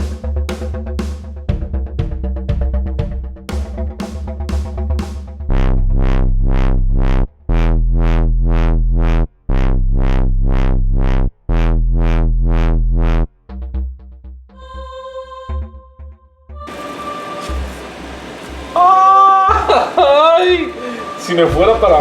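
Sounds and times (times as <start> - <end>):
electronic dance music: 5.5 - 13.2, 16.7 - 22.0.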